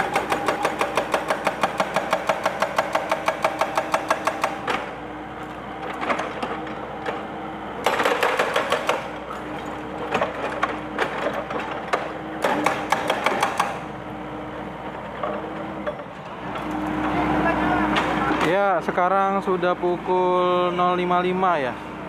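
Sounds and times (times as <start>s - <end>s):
hydraulic breaker hammering concrete: 0.0s - 5.0s, 5.8s - 13.9s
excavator engine running: 0.0s - 22.0s.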